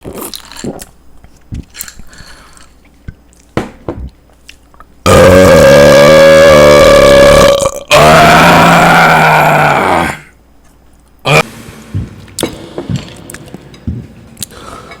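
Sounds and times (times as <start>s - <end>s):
man burping loudly: 5.0s - 10.3s, 11.2s - 11.5s.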